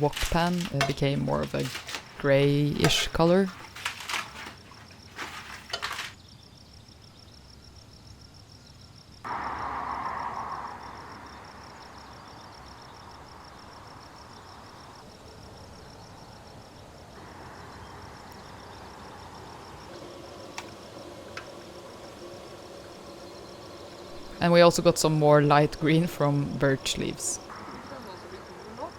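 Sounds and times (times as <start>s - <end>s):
outdoor background noise: 0.0s - 28.9s
insect trilling: 8.7s - 28.9s.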